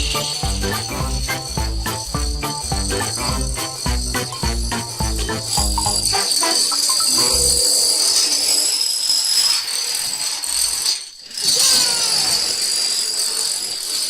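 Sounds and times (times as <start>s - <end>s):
bright rattling jingle: 0.0s - 8.8s.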